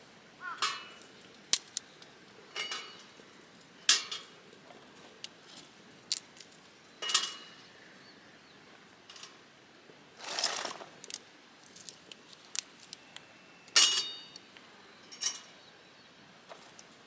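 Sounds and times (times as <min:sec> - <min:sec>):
sharp ringing clink: 0:13.8 - 0:14.3.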